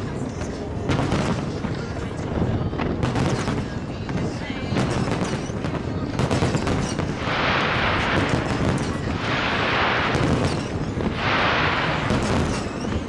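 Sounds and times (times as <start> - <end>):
fireworks cracks and bangs: 0.0 - 13.0
hissing crackle: 6.4 - 13.0.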